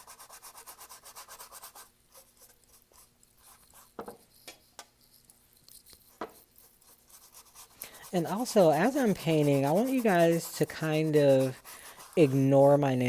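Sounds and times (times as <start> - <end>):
paintbrush scrubbing canvas: 0.0 - 13.0.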